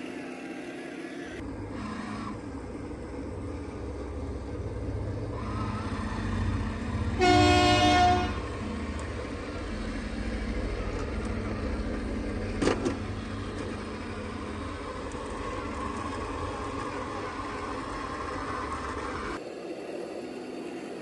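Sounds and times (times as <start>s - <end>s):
low engine rumble: 1.4s - 21.0s
vehicle horn toot: 7.2s - 8.4s.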